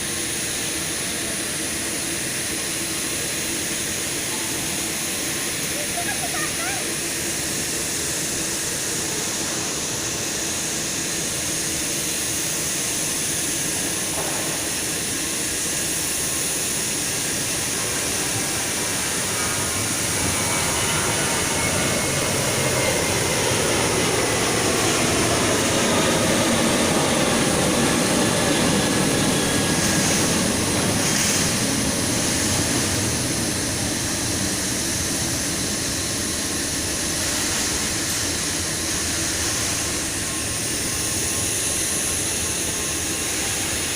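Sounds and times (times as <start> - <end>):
jet engines roaring: 0.0 - 43.9
jet whine sliding down: 16.8 - 43.9.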